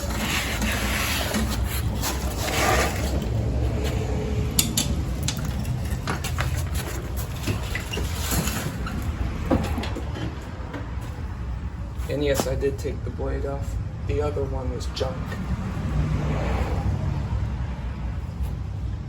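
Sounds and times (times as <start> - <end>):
scraping and rustling: 0.0 - 12.8.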